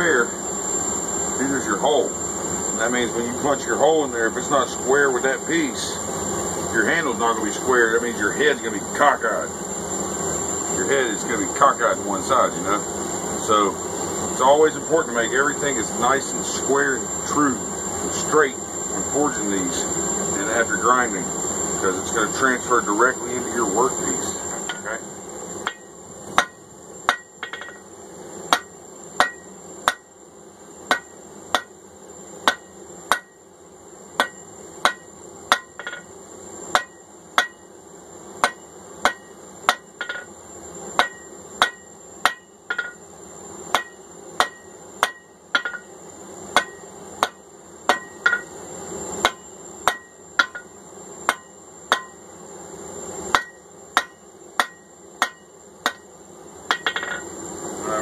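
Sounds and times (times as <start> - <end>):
hammer striking steel on anvil: 25.6 - 27.8, 28.5 - 30.1, 30.9 - 31.8, 32.4 - 33.4, 34.2 - 36.1, 36.7 - 37.7, 38.4 - 40.3, 41.0 - 43.0, 43.7 - 45.9, 46.5 - 48.5, 49.2 - 52.2, 53.3 - 56.1, 56.7 - 57.3.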